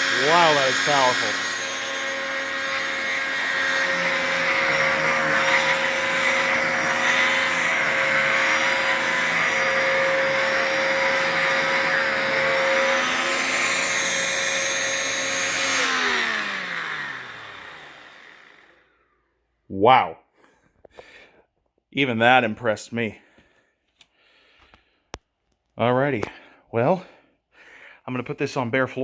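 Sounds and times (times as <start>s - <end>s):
vacuum cleaner running: 0.0s - 19.1s
motor whine spinning down: 7.0s - 18.9s.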